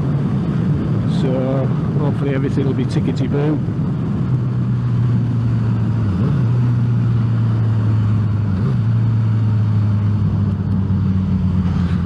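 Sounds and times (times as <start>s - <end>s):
wind noise: 0.0s - 12.0s
motorcycle engine running: 3.6s - 12.0s.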